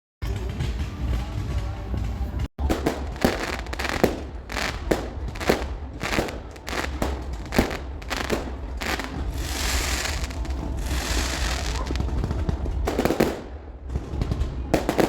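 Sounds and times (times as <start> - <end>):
fireworks bangs: 2.6 - 15.0
fireworks crackling: 2.6 - 15.0
hissing crackle: 3.0 - 12.2.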